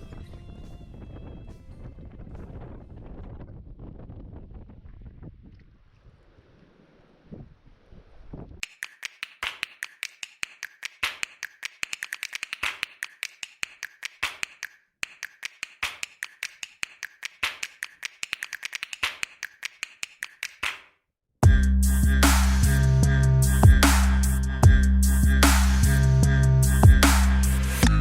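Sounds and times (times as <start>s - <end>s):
wind: 0.0s - 8.6s
rapid sharp clicks: 8.6s - 20.9s.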